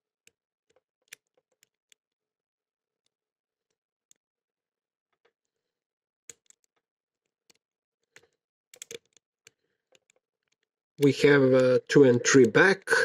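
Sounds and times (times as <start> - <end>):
lock pick metal clicks: 0.2 - 2.2, 6.3 - 10.8.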